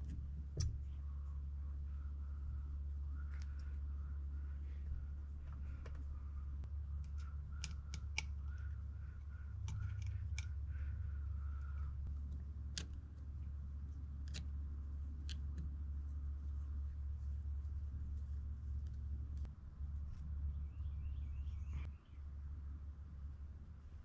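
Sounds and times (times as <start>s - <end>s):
steady low hum: 0.0s - 24.0s
small parts clicking and tapping: 4.8s - 15.8s.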